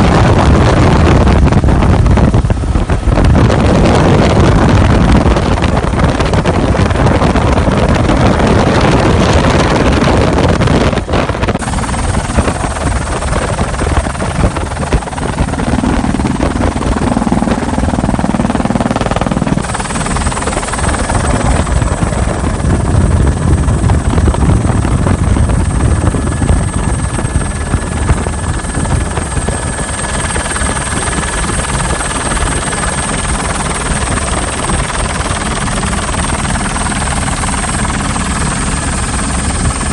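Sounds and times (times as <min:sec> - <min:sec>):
helicopter rotor and engine noise: 0:00.0 - 0:39.9
wind rush: 0:00.0 - 0:39.9
thin high whine: 0:19.6 - 0:23.4.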